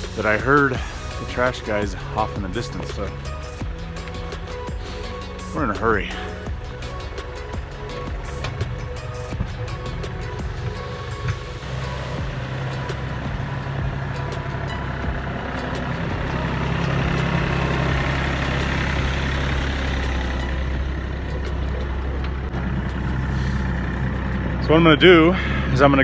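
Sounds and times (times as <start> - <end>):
tractor diesel engine running: 0.0 - 26.0.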